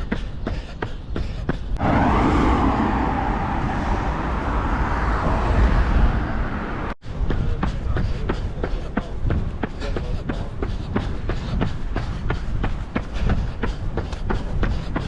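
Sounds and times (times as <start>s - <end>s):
running footsteps on pavement: 0.0s - 1.8s, 7.3s - 15.0s
road traffic noise: 1.8s - 8.8s.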